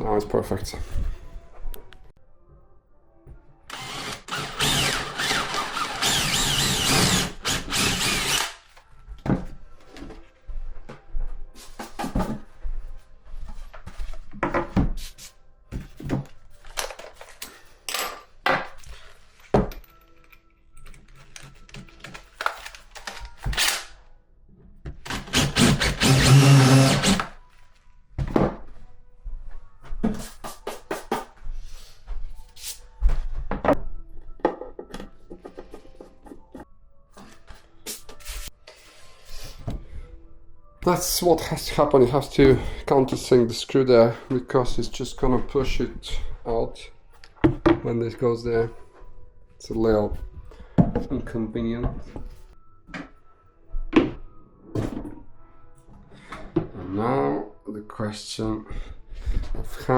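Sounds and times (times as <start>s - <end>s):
power drill driving screws: 3.7s - 8.7s, 25.1s - 27.3s.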